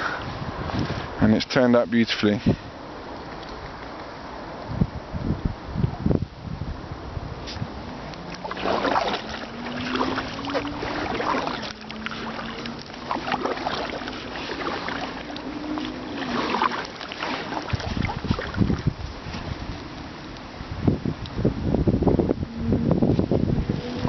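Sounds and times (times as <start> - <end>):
paddle strokes splashing in water: 7.5 - 20.4.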